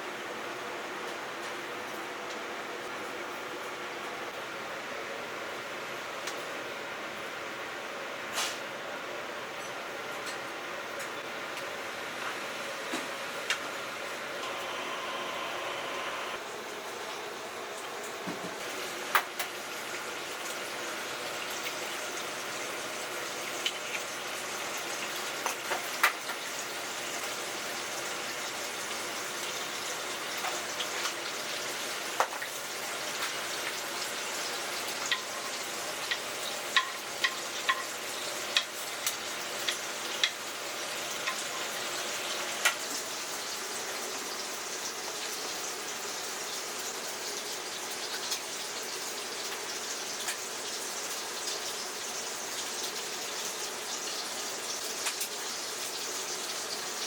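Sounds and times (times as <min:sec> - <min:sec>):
steady sizzling hiss: 0:00.0 - 0:57.0.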